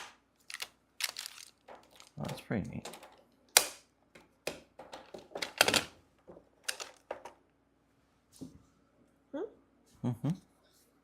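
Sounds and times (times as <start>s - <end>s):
plastic tiles clacking together: 0.0s - 3.8s, 6.6s - 7.3s.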